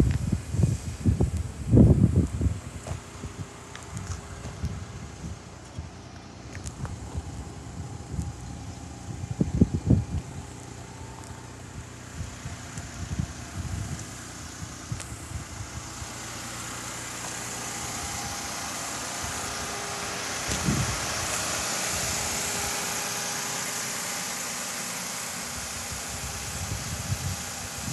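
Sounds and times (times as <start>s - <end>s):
car engine idling: 0.0s - 27.9s
air-conditioning blower rushing: 6.8s - 27.9s.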